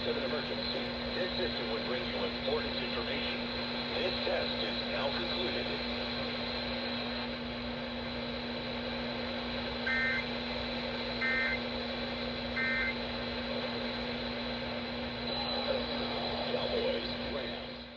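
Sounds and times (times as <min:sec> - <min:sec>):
broadcast hiss and hum: 0:00.0 - 0:17.9
two-tone data bursts: 0:09.9 - 0:10.3, 0:11.2 - 0:11.6, 0:12.6 - 0:13.0.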